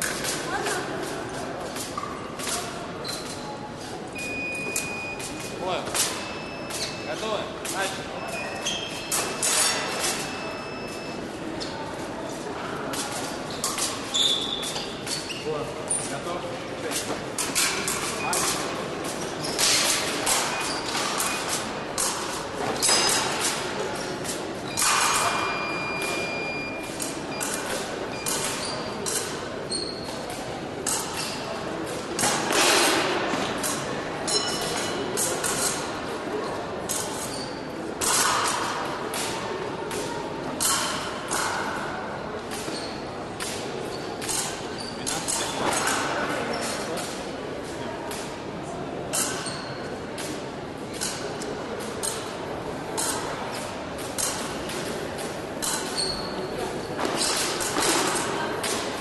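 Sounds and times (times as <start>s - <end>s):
murmur of large hall: 0.0s - 59.0s
fencing blades clinking: 4.2s - 11.1s, 16.9s - 36.1s, 36.9s - 41.8s, 42.5s - 47.2s, 49.1s - 52.3s, 53.0s - 58.9s.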